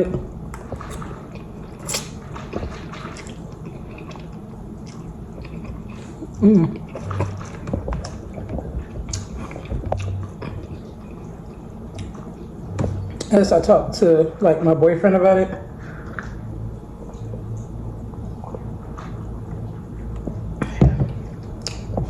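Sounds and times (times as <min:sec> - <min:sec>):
person chewing: 0:00.8 - 0:02.3.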